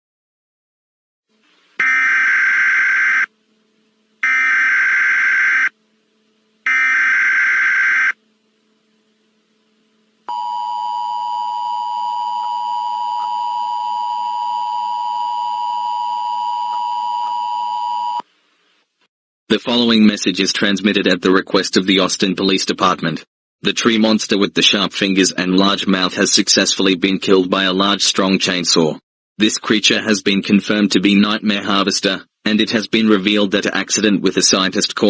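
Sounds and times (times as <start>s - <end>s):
two-tone attention signal buzz: 4.2s - 5.7s, 6.6s - 8.2s, 10.3s - 18.2s.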